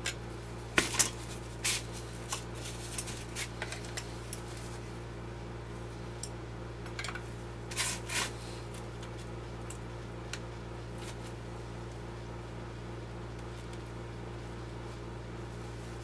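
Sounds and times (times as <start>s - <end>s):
steady electrical hum: 0.0s - 16.0s
scraping rustles: 0.9s - 4.9s.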